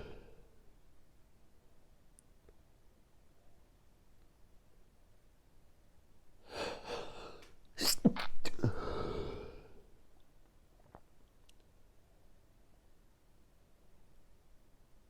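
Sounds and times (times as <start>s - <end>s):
person gasping in-breath: 0.0s - 0.5s, 6.4s - 9.9s
person sneezing loudly: 7.8s - 9.6s.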